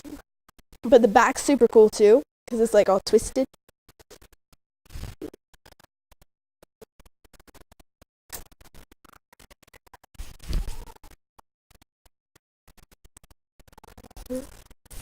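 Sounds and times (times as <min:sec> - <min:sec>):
small clicks and bumps: 0:03.4 - 0:15.0.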